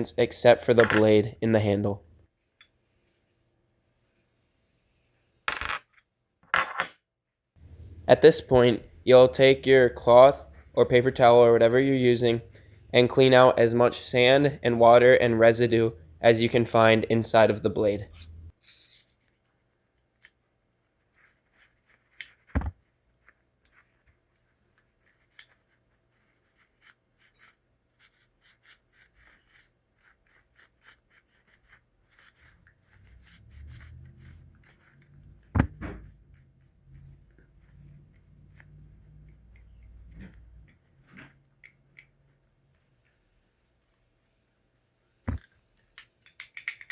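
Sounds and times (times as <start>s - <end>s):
sharp knocks: 35.5s - 36.0s
small metal parts clicking: 46.0s - 46.9s.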